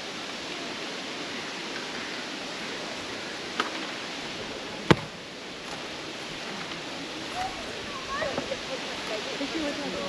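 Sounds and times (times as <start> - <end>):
steady outdoor hiss: 0.0 - 10.0
sharp thud: 4.9 - 5.2.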